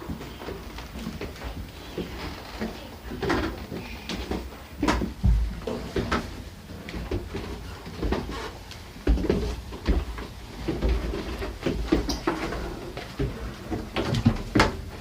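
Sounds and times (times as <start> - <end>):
low thumps: 5.2 - 5.7.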